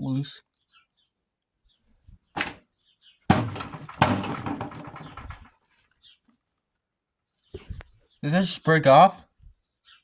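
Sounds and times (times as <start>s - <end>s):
impact driver hammering: 2.4s - 2.6s, 3.3s - 5.4s.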